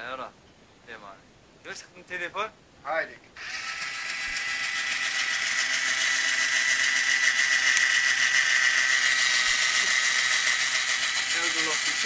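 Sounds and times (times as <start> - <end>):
small motorised tool whining: 3.4 - 12.0.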